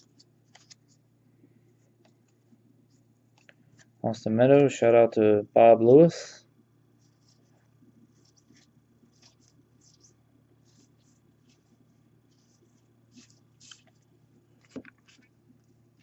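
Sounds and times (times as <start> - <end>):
trading cards swishing: 0.0 - 1.0, 7.0 - 15.5.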